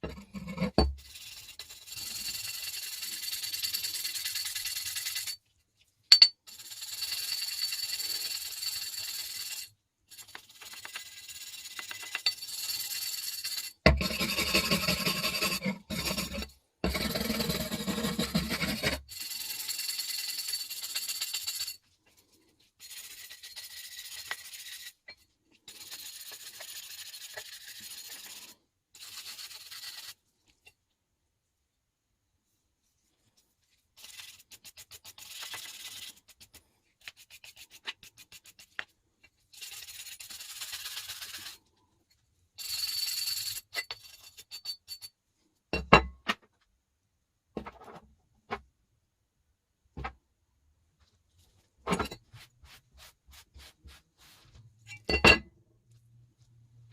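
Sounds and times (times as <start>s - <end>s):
wire brush scraping metal: 7.8s - 21.8s.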